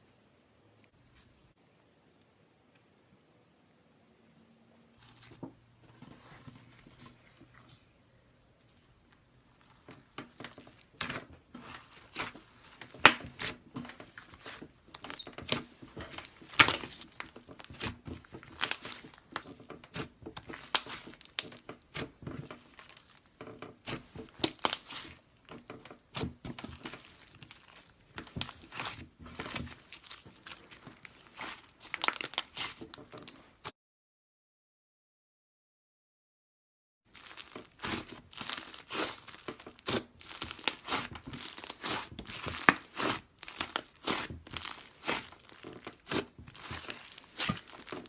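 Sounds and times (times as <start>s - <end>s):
slime crackling and popping: 9.5s - 33.7s, 37.1s - 48.0s.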